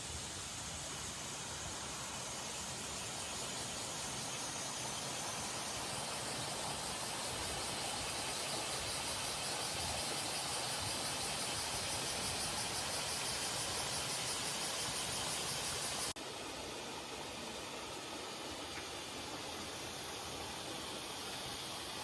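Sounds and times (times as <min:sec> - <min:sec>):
cicadas buzzing: 0:00.0 - 0:22.0.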